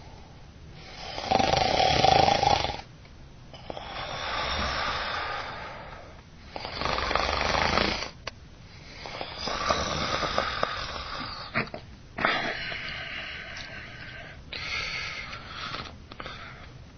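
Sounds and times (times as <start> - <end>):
baby snoring: 0.8 - 2.9, 3.6 - 8.2, 9.1 - 11.6.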